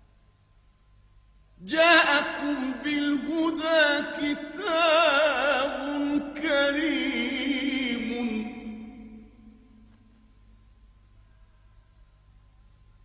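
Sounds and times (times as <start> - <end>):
man singing solo: 1.6 - 9.4.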